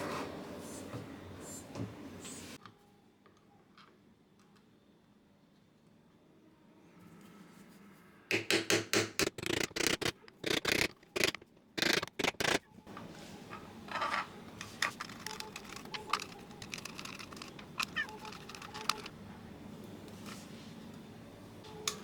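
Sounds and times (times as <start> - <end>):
loud scraping on hard plastic: 9.2 - 12.6, 14.7 - 19.1
rubbing and handling noises: 9.2 - 12.6, 13.2 - 19.1.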